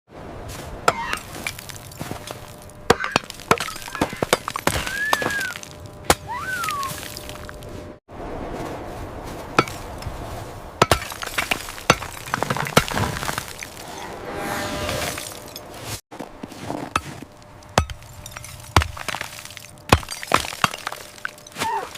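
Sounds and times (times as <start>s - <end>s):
ice cracking and chipping: 1.0s - 7.7s, 10.8s - 13.9s, 16.2s - 21.9s.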